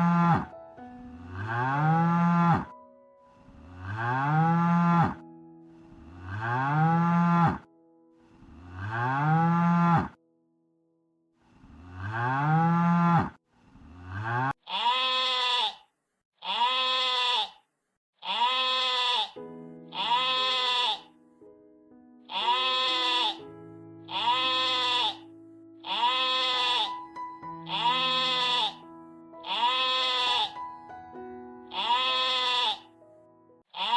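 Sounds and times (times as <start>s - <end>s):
cow mooing: 0.0s - 0.5s, 1.2s - 2.7s, 3.6s - 5.2s, 6.0s - 7.7s, 8.4s - 10.2s, 11.6s - 15.8s, 16.5s - 17.5s, 18.2s - 19.4s, 20.0s - 21.1s, 22.3s - 23.4s, 24.1s - 25.2s, 25.9s - 26.9s, 27.7s - 28.8s, 29.4s - 30.6s, 31.7s - 32.9s
sheep bleating: 0.0s - 0.5s, 1.3s - 2.7s, 14.1s - 15.8s, 16.4s - 17.6s, 18.2s - 21.1s, 22.3s - 23.4s, 24.1s - 27.0s, 27.7s - 28.8s, 29.4s - 30.6s, 31.7s - 32.9s.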